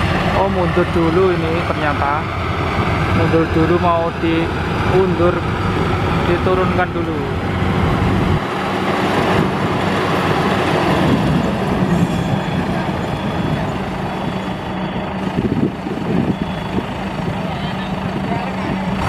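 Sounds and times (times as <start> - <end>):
harvester engine running: 0.0 - 19.0
faint high beeps: 11.4 - 17.5.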